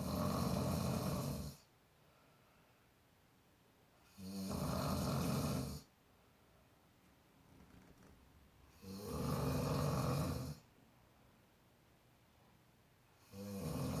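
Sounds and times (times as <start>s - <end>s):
person snoring: 0.0s - 1.7s, 4.1s - 5.9s, 8.7s - 10.6s, 13.2s - 14.0s.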